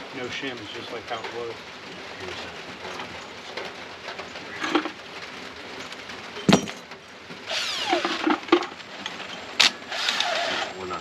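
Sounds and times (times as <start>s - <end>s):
metal clank: 5.8s - 7.0s
metal parts knocking: 5.8s - 7.0s.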